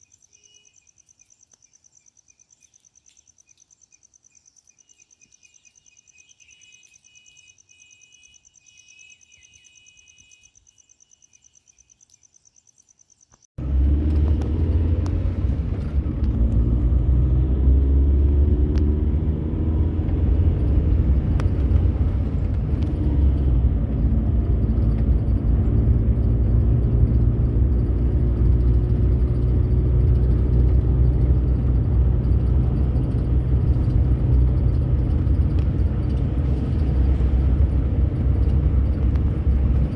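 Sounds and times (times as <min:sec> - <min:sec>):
insects trilling: 0:00.0 - 0:13.5
car engine and road rumble: 0:13.2 - 0:39.9.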